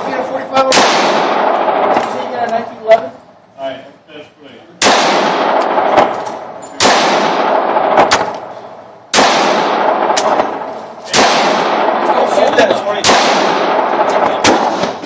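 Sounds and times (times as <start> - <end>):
pistol shots echoing: 0.0 - 2.2, 4.8 - 15.0
quiet sharp cracks: 9.1 - 12.4.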